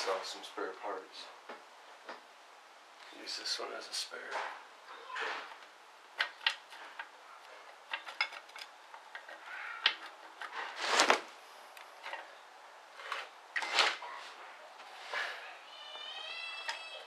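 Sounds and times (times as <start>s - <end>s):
metal parts clinking and knocking: 7.7s - 10.6s
metal parts clattering: 7.9s - 11.0s.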